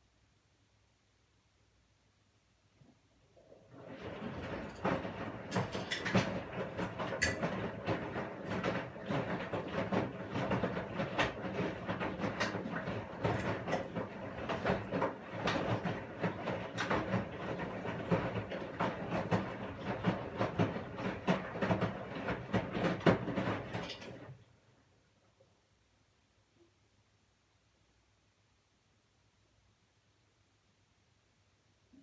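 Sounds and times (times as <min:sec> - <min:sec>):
washing machine running: 0:03.4 - 0:24.8.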